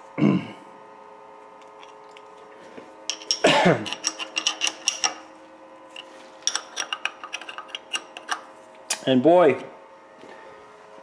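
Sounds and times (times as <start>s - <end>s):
steady machine hum: 0.0s - 11.0s
metallic clicks and clatter: 3.1s - 5.2s.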